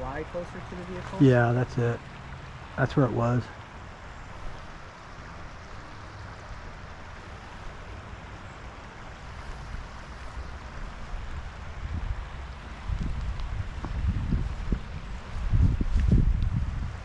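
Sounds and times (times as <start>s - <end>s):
river flowing: 0.0s - 17.0s
wind rumble on microphone: 9.2s - 17.0s.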